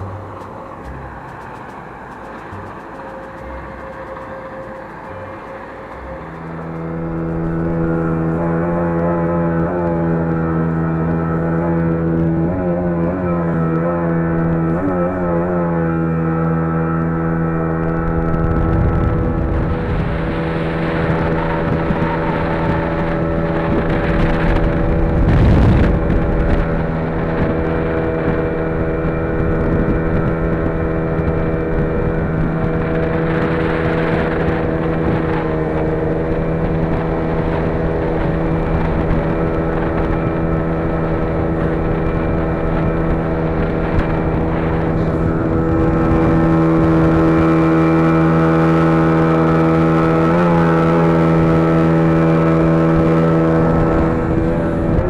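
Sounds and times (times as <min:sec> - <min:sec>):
vehicle engine running: 0:00.0 - 0:55.0.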